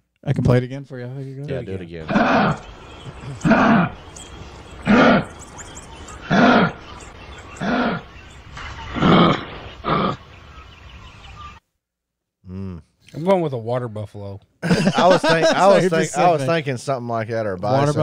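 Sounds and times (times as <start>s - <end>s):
kangaroo growling: 2.0s - 10.5s.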